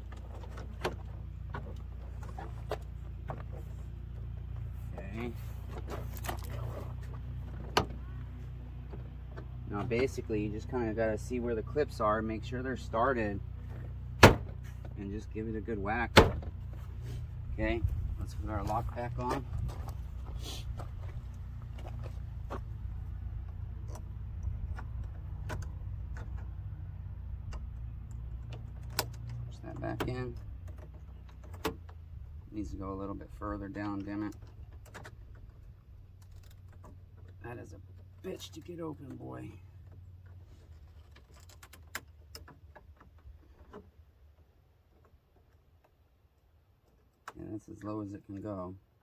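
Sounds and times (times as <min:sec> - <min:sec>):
low steady hum: 0:00.0 - 0:41.7
clicks and taps of door parts: 0:13.7 - 0:15.0
light clicks of plastic parts: 0:17.8 - 0:32.2.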